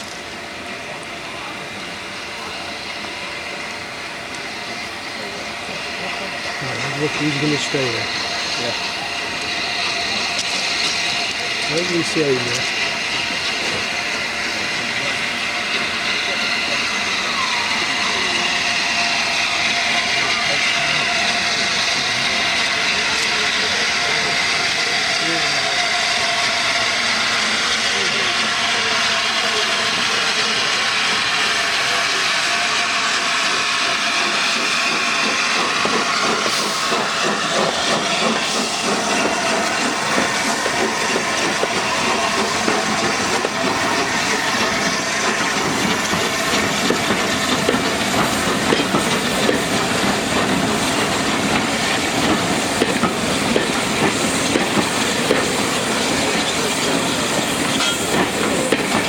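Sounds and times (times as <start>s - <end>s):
steam locomotive hissing: 0.0s - 59.0s
wheels clicking over rails: 33.9s - 59.0s.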